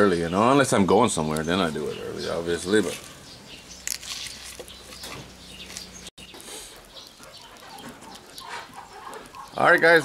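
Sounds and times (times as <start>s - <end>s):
chickens clucking: 4.6s - 10.0s.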